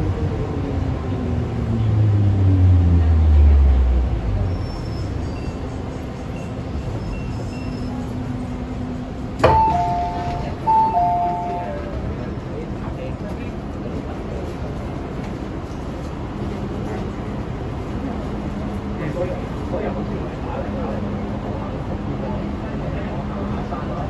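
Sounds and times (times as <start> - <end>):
two-note door chime: 9.4 - 11.7
train braking whine: 9.4 - 11.8.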